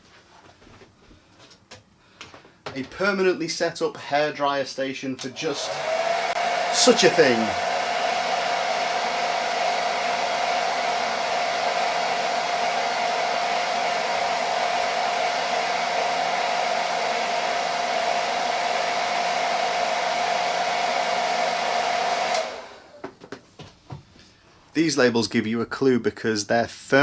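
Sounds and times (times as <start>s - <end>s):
hairdryer running with whine: 5.2s - 23.2s.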